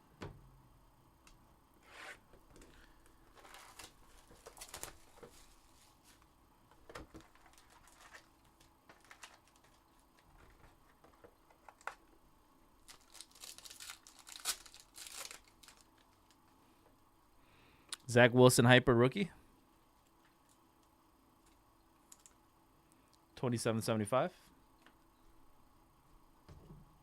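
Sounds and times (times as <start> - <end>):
plastic wrap rustling: 3.2 - 6.2, 6.8 - 12.0, 12.8 - 16.4
packaging tearing: 12.8 - 16.1.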